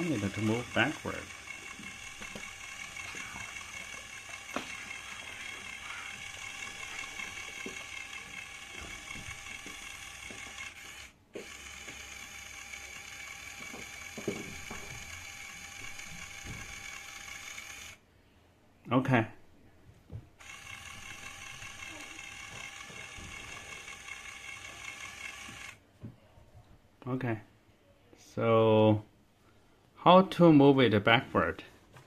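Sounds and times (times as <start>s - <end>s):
toy motor driving plastic gears: 0.0s - 18.0s, 20.4s - 25.8s.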